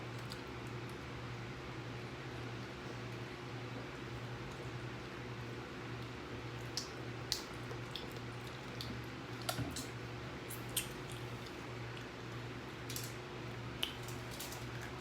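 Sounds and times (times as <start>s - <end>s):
chewing clicks and smacks: 0.1s - 1.0s, 6.0s - 12.1s, 13.8s - 15.0s.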